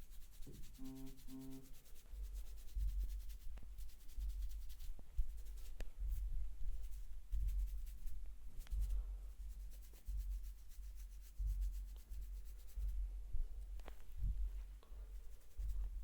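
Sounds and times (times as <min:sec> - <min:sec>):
hands rubbing hair: 0:00.0 - 0:16.0.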